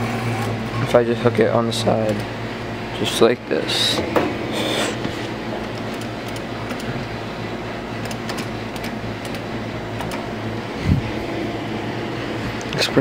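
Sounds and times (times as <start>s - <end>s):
claw machine humming: 0.0s - 13.0s.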